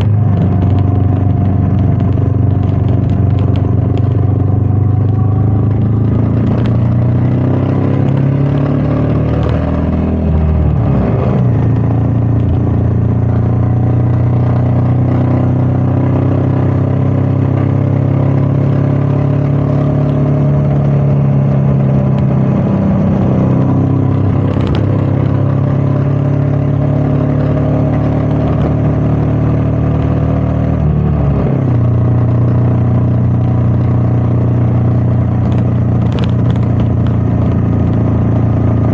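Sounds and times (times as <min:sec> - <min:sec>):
wind noise: 0:00.0 - 0:08.3, 0:20.2 - 0:25.8
motorcycle engine running: 0:00.0 - 0:38.9.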